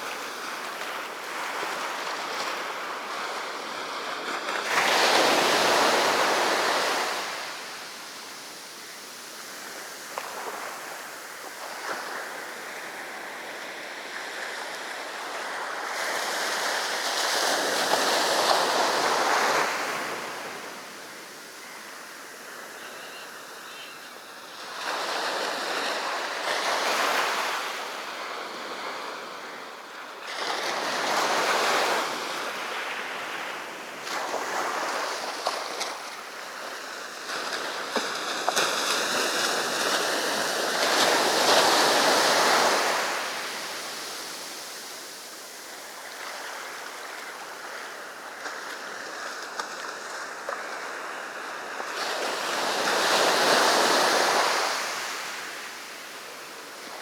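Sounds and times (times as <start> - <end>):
waves crashing on shore: 0.0 - 57.0.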